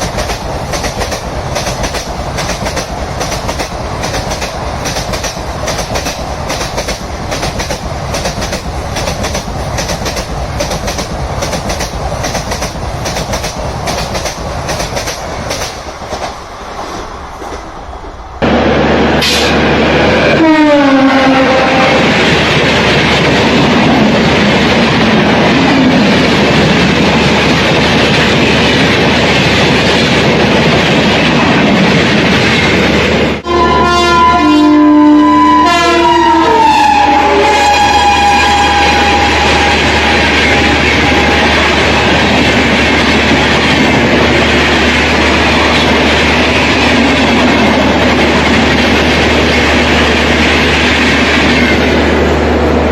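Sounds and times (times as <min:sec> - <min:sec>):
train wheels clattering on track: 0:00.0 - 0:18.2, 0:21.7 - 0:33.4, 0:38.3 - 0:52.0
locomotive horn: 0:18.4 - 0:22.2, 0:33.4 - 0:42.0.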